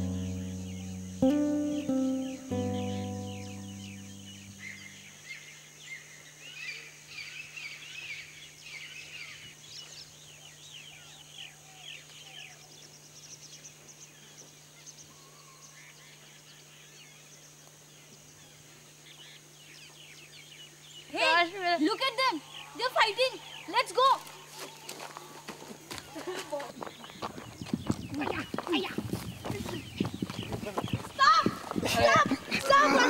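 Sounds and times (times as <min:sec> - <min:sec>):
held music chord: 0:00.0 - 0:05.2
faint steady hum: 0:00.0 - 0:27.6
small birds chirping: 0:00.0 - 0:33.0.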